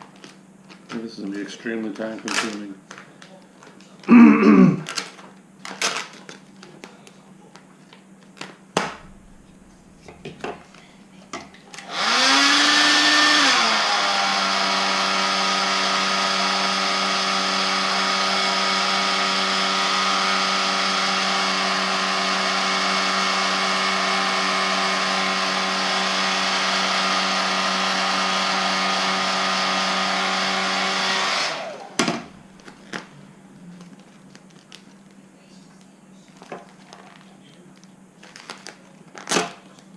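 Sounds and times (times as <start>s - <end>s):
heat gun blowing: 11.7s - 32.9s.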